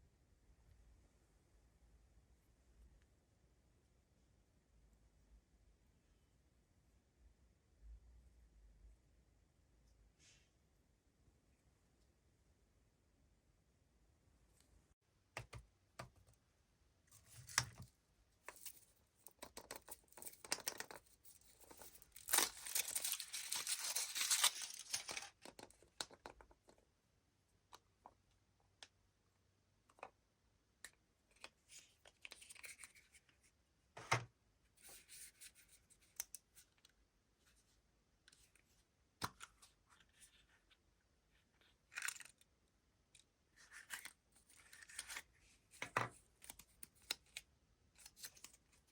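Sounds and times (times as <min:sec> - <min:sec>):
wrappers torn and crinkled: 0:21.6 - 0:25.4.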